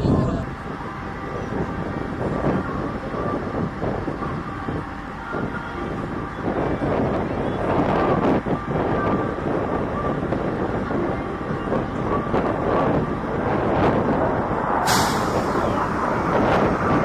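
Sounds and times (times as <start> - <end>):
aircraft flying past: 13.1 - 17.0
sharp hiss: 14.8 - 16.0.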